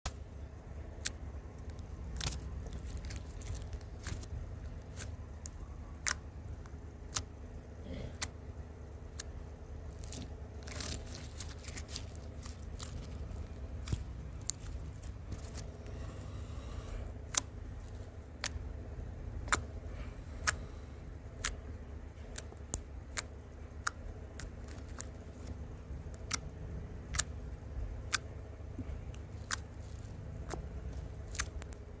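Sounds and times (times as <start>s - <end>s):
low steady hum: 0.1s - 32.0s
sharp clicks: 0.8s - 7.3s, 17.2s - 18.8s, 19.4s - 19.8s, 21.2s - 27.4s, 29.1s - 31.9s.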